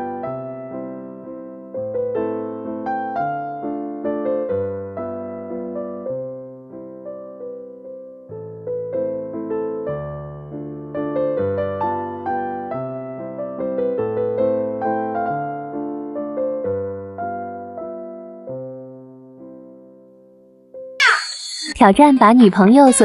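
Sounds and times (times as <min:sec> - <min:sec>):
keyboard melody: 0:00.0 - 0:21.0.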